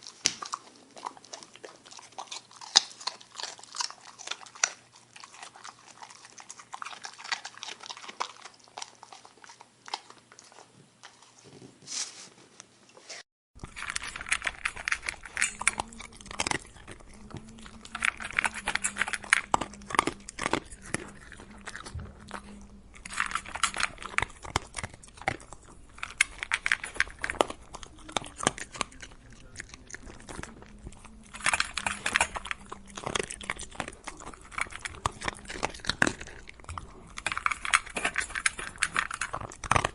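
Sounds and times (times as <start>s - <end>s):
dog chewing food: 0.0s - 11.8s, 13.6s - 39.9s
faint steady hum: 13.6s - 39.9s.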